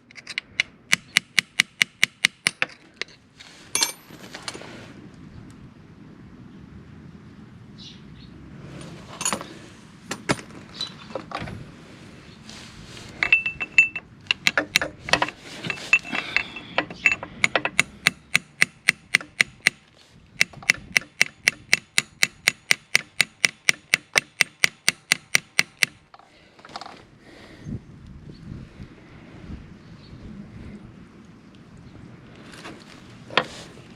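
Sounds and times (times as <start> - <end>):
metal tools clinking: 2.6 - 4.6, 9.1 - 11.6, 13.1 - 17.8.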